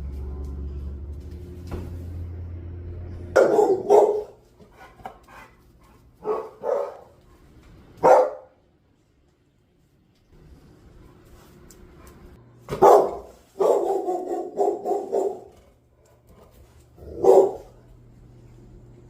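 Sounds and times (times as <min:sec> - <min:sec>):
steady low hum: 0:00.0 - 0:19.0
dog barking: 0:03.3 - 0:04.4, 0:06.2 - 0:07.2, 0:08.0 - 0:08.6, 0:12.7 - 0:15.6, 0:17.0 - 0:17.8.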